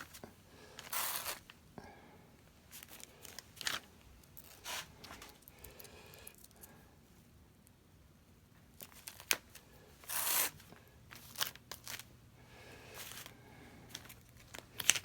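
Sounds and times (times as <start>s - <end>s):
velcro rustling scrapes: 0.0s - 1.5s, 2.8s - 5.4s, 8.8s - 12.0s.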